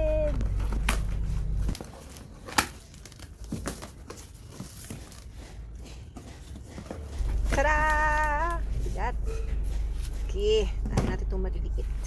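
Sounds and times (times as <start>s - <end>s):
packaging crinkling and tearing: 0.4s - 5.4s.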